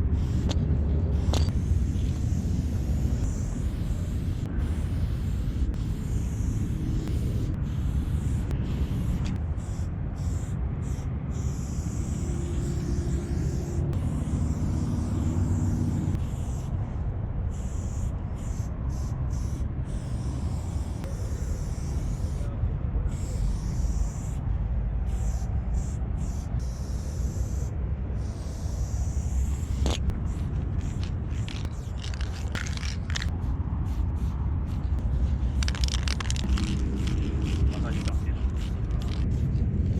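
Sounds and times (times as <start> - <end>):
spray paint can hissing: 0.0 - 16.9, 17.5 - 22.5, 23.1 - 24.4, 25.0 - 39.9
wind rumbling on microphone: 27.7 - 39.9.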